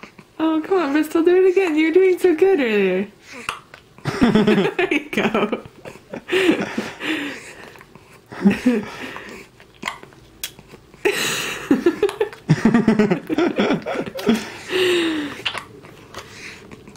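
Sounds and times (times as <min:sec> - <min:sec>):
baby sucking on pacifier: 0:09.1 - 0:11.0, 0:15.3 - 0:16.9.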